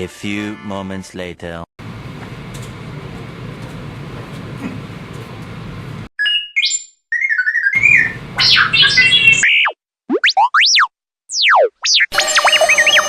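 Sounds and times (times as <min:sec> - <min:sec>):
steady low hum: 0:01.8 - 0:06.1
electronic chirps and bleeps: 0:07.5 - 0:13.0.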